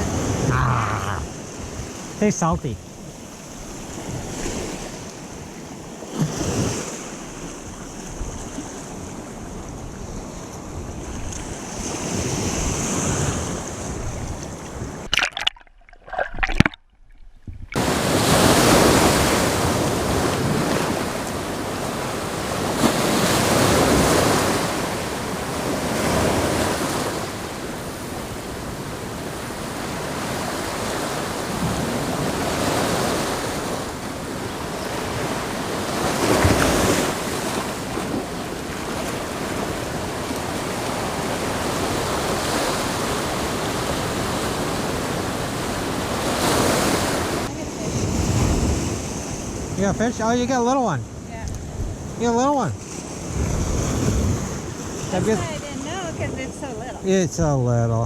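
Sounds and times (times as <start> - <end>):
wind buffeting microphone: 0.0 - 2.2, 2.9 - 15.1, 51.0 - 52.2, 52.8 - 57.1
ocean surf washing ashore: 0.0 - 15.1, 17.8 - 58.0.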